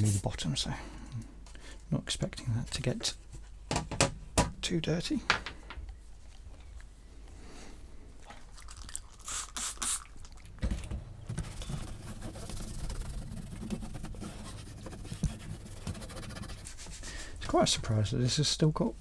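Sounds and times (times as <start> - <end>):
cloth rubbing plastic case: 10.5 - 17.1.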